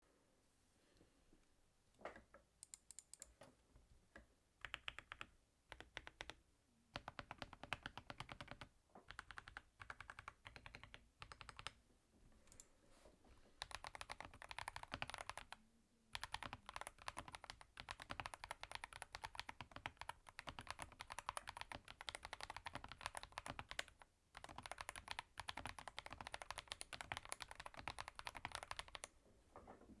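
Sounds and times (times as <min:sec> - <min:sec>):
typing on mechanical keyboard: 0:04.6 - 0:11.8, 0:13.6 - 0:29.1.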